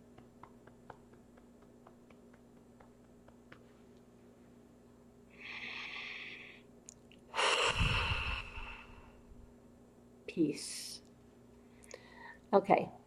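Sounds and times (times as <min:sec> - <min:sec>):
woman breathing in and sighing: 0:07.3 - 0:09.2.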